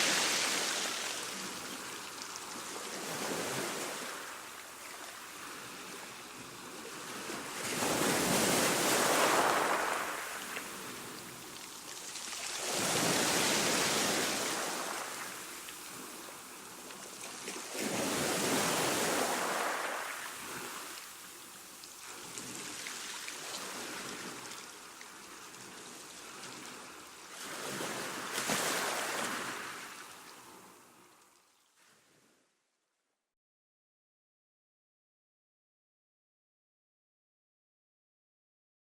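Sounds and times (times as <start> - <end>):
small waves washing in: 0.0 - 31.2.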